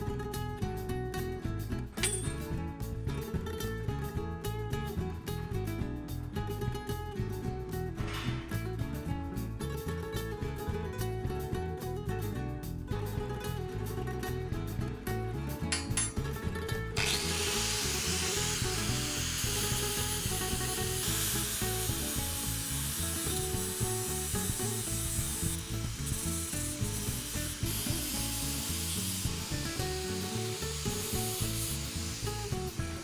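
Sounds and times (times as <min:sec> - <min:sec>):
background music: 0:13.4 - 0:33.0
power tool grinding: 0:17.0 - 0:33.0.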